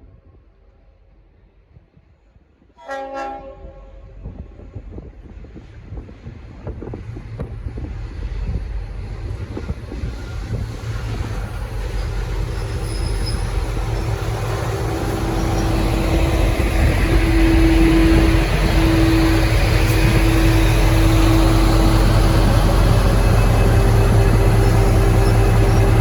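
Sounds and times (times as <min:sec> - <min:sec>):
diesel locomotive rumbling: 0:02.8 - 0:26.0
steady low drone: 0:13.6 - 0:26.0.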